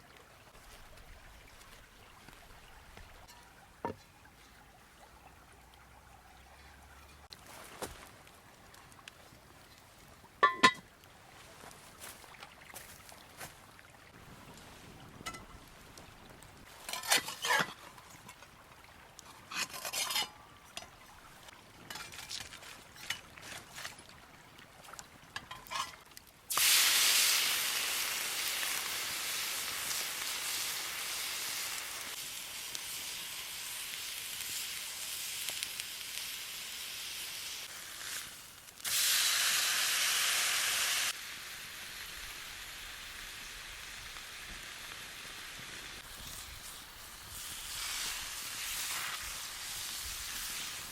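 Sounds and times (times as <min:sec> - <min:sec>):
steak sizzling in a pan: 0:26.5 - 0:50.9.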